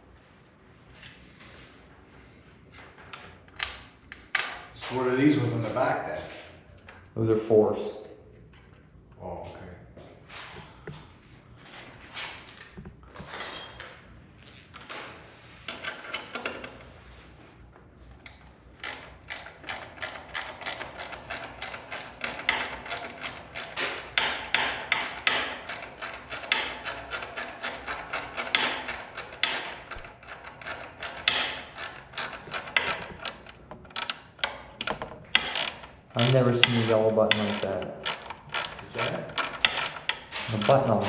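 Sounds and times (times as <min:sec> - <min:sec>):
rapid mechanical clicking: 0:18.8 - 0:41.0.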